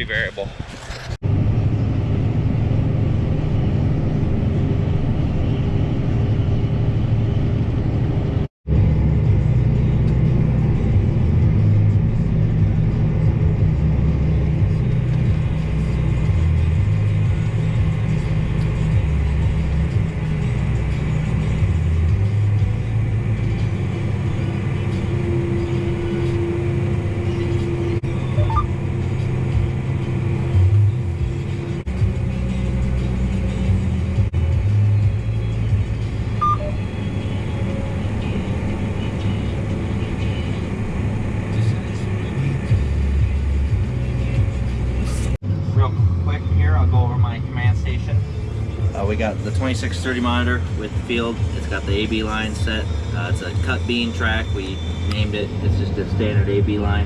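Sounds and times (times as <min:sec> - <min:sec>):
tractor engine rumble: 0:00.0 - 0:57.0
music playing: 0:11.8 - 0:29.8, 0:30.5 - 0:57.0.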